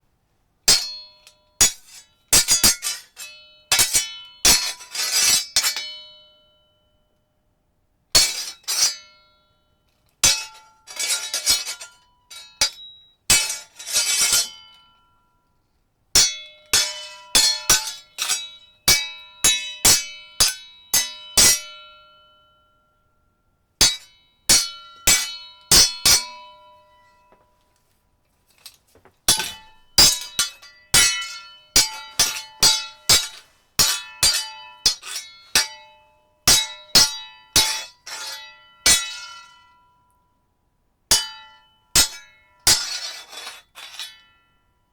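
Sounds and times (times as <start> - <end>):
steel swords clashing: 29.3 - 35.8.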